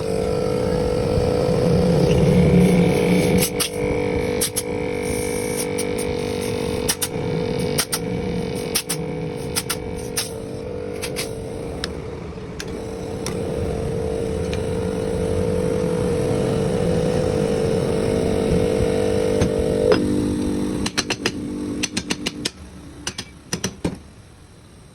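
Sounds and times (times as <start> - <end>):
refrigerator compressor humming: 0.0 - 24.9
sharp clicks and knocks: 5.5 - 12.0, 19.2 - 24.1.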